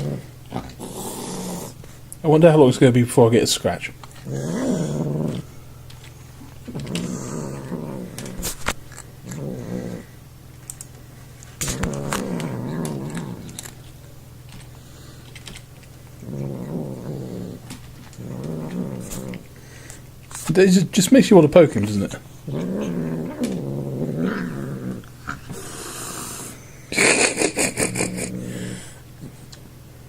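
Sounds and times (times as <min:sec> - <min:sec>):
cat growling: 0:00.0 - 0:02.0, 0:04.1 - 0:05.6, 0:06.4 - 0:10.2, 0:11.6 - 0:13.9, 0:16.2 - 0:20.0, 0:22.0 - 0:29.5.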